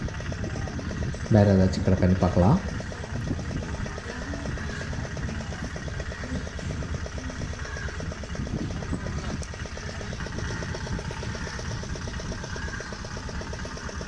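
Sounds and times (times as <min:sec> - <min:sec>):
boat engine idling: 0:00.0 - 0:14.0.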